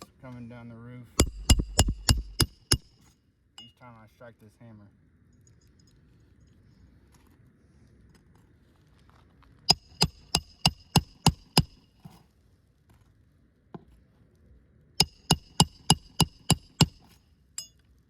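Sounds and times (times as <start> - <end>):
hammer driving nails: 1.2 - 2.9, 9.7 - 11.8, 15.0 - 17.2.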